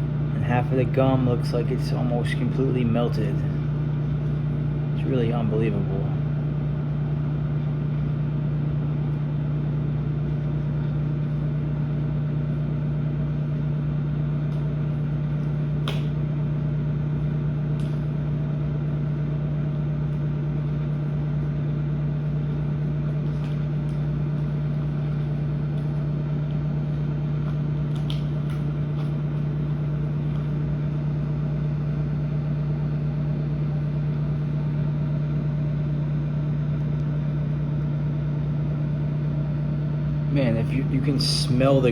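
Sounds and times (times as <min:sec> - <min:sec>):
microwave oven humming: 0:00.0 - 0:41.9.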